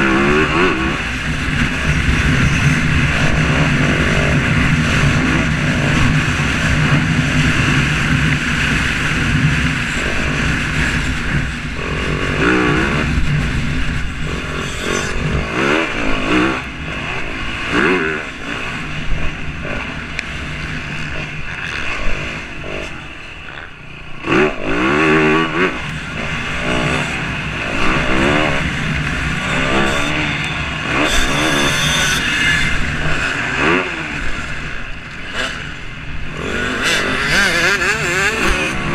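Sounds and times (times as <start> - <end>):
dirt bike engines revving: 0.0 - 38.9
distant drone of bikes: 0.0 - 38.9.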